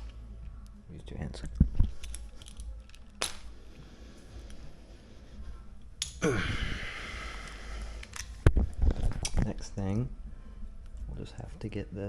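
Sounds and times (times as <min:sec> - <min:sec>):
person groaning and sighing: 0:06.2 - 0:08.0.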